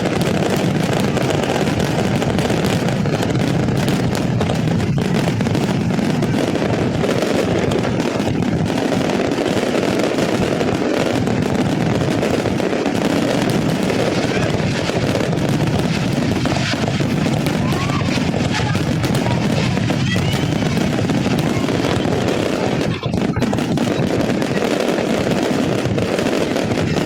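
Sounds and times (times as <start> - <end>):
crackling fireworks: 0.0 - 27.0.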